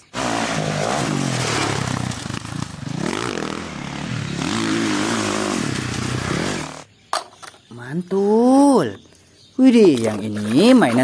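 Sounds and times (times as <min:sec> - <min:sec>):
dirt bike engine revving: 0:00.0 - 0:06.9.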